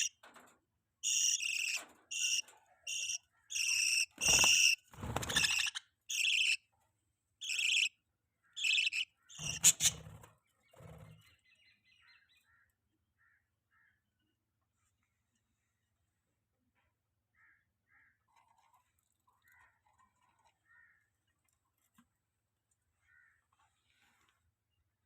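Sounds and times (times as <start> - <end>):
budgerigars chirping: 1.0 - 6.6, 7.4 - 7.9, 8.6 - 10.0.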